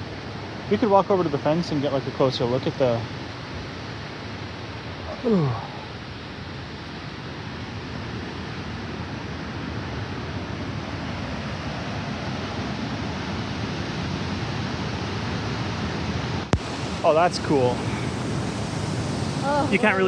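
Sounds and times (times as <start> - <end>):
waterfall and rushing creek: 0.0 - 20.0.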